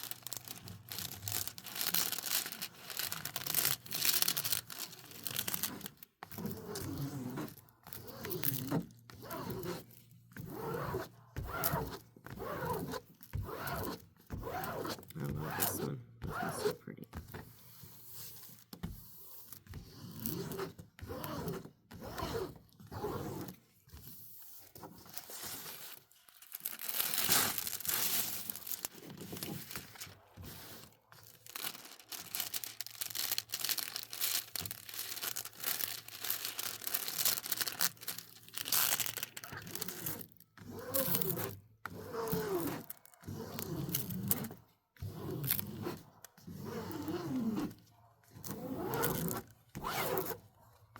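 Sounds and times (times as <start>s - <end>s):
plastic packaging crinkling: 0.0s - 6.1s, 25.0s - 40.4s.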